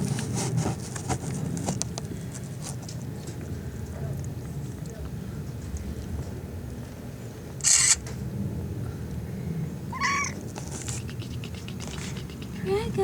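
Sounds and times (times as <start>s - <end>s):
kitten mewing: 9.9s - 13.0s.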